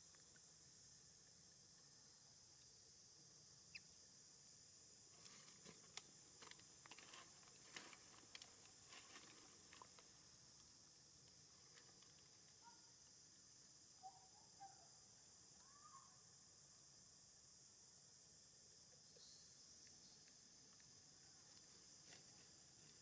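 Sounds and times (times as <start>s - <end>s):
faint clicks and rustles: 5.2s - 12.6s.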